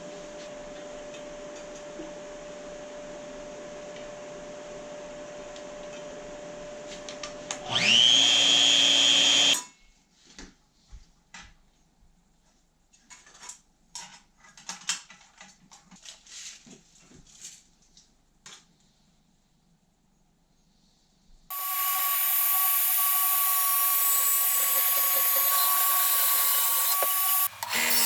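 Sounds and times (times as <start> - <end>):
power tool motor whining: 7.6 - 9.6, 21.5 - 28.0
steady hum: 21.5 - 28.0.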